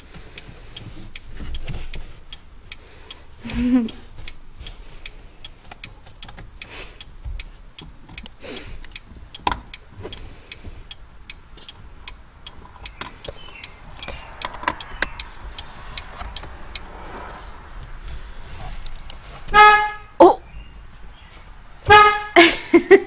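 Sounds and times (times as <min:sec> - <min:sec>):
mechanical ticking inside a car: 0:00.0 - 0:16.9, 0:17.8 - 0:22.4.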